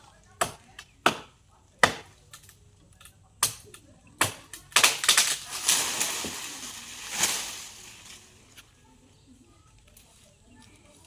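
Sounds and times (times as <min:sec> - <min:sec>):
chopping strokes on wood: 0:00.4 - 0:02.1
dense crackling and snapping: 0:04.2 - 0:08.7.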